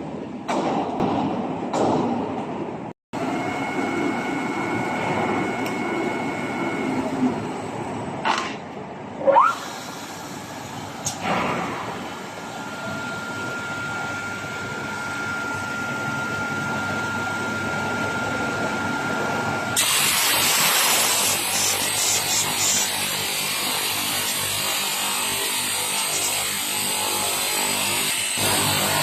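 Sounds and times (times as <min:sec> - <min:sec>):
machine running: 0:03.2 - 0:29.0
thin high whine: 0:09.1 - 0:22.9
loud hissing machine noise: 0:09.5 - 0:29.0.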